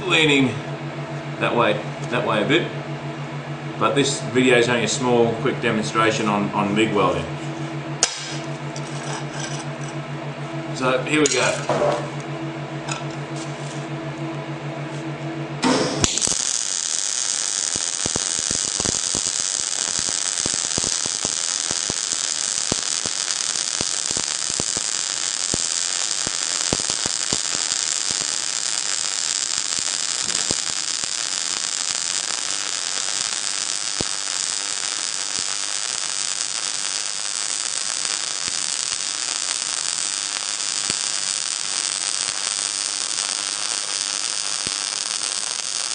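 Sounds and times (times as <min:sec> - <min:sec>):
welder hum: 0:00.0 - 0:45.9
welding arc crackling and sizzling: 0:07.4 - 0:10.1, 0:11.1 - 0:12.3, 0:15.6 - 0:45.9.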